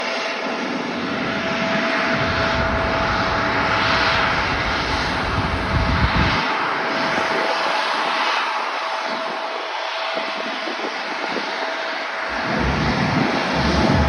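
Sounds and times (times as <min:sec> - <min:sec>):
jet engines roaring at takeoff: 0:00.0 - 0:14.0
deep rumble: 0:02.1 - 0:06.4, 0:12.3 - 0:14.0.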